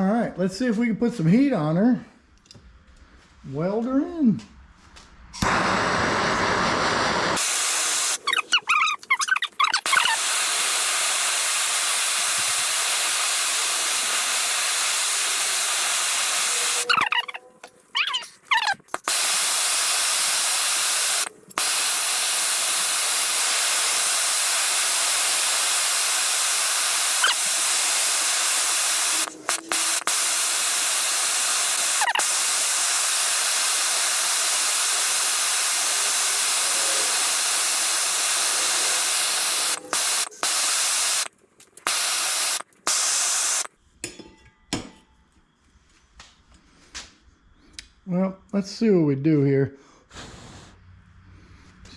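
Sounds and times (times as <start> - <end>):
gas torch flame hissing: 5.4 - 17.4, 18.0 - 43.7, 50.1 - 50.8.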